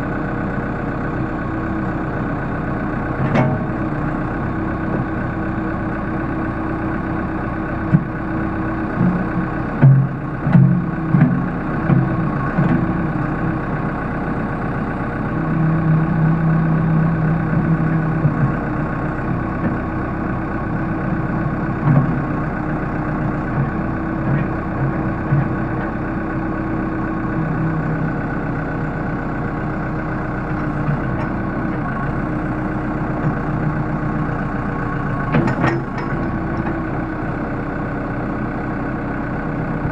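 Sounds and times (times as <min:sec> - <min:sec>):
diesel engine running: 0:00.0 - 0:39.9
sharp clunks: 0:35.3 - 0:36.8.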